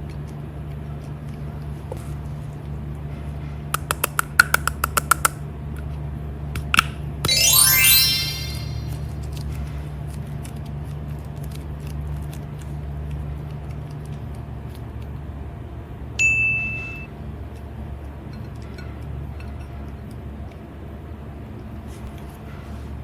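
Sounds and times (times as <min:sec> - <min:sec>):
bright ding: 0:07.3 - 0:09.0.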